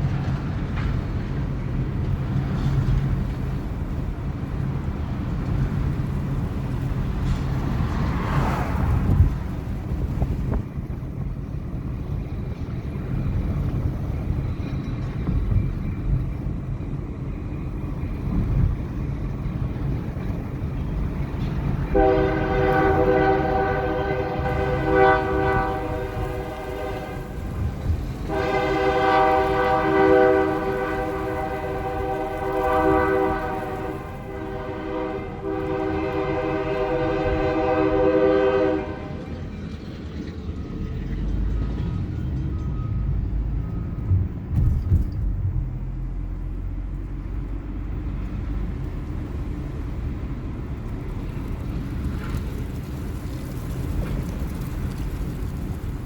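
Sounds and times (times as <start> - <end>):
low train rumble: 0.0 - 56.0
locomotive air horn blasts: 21.9 - 39.3.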